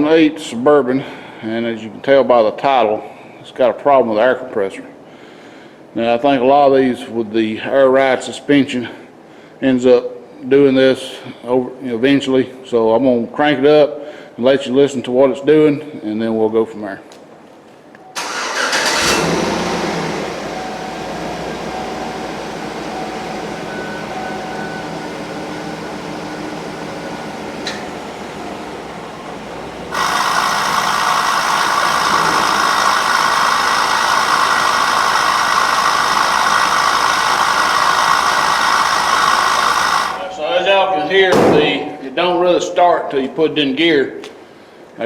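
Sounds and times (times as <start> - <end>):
car engine starting and idling: 18.2 - 40.4
air compressor rattling: 29.7 - 40.2.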